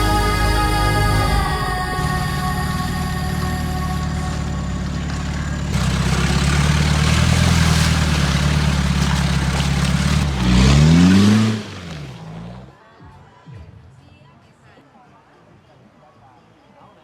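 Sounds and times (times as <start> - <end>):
off-road vehicle engine revving: 0.0 - 12.8.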